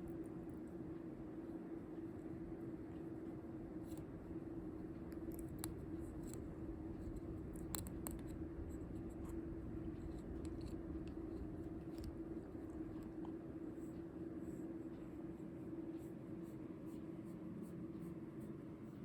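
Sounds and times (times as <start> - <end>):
low electrical hum: 0.0 - 19.0
cat being brushed scratching: 5.1 - 19.0.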